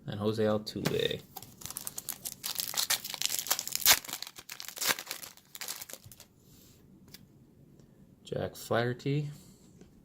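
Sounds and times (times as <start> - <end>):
foil wrapper crinkling and tearing: 1.3 - 6.3.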